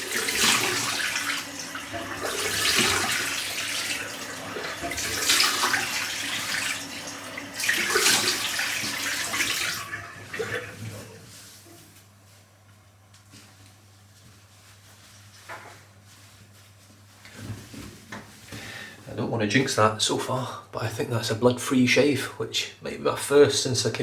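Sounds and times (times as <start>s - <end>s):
tap water splashing in sink: 0.0s - 11.2s.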